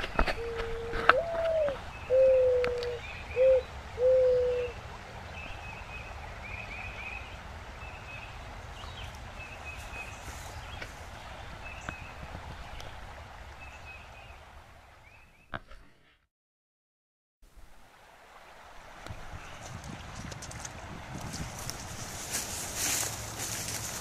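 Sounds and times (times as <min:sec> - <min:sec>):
mourning dove cooing: 0:00.2 - 0:04.8.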